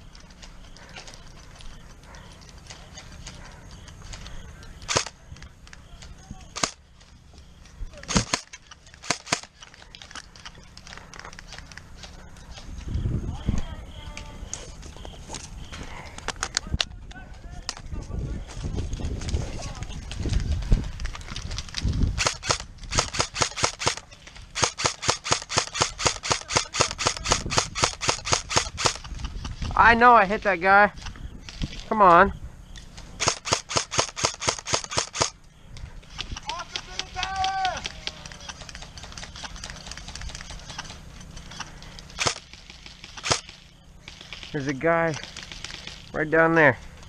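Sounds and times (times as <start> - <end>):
airsoft gun rapid shots: 6.6 - 6.8, 8.1 - 9.6, 22.2 - 24.0, 24.6 - 29.0, 33.2 - 35.4, 42.2 - 44.5.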